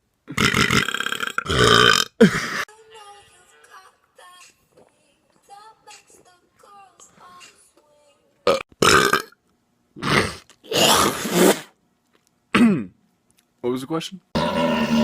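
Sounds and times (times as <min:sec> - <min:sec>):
person burping: 0:00.3 - 0:02.6, 0:08.5 - 0:09.4, 0:10.0 - 0:11.2, 0:12.6 - 0:12.9, 0:14.4 - 0:15.0.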